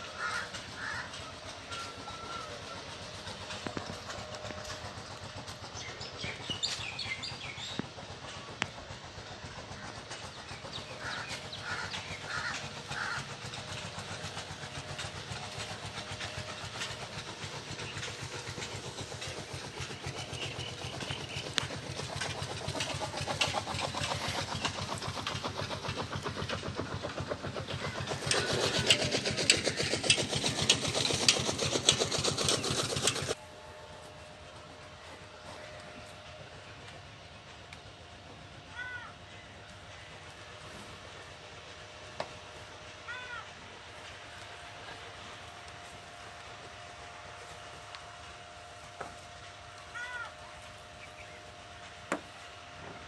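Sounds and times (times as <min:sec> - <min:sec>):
motor running with rapid beat: 0:00.0 - 0:33.4.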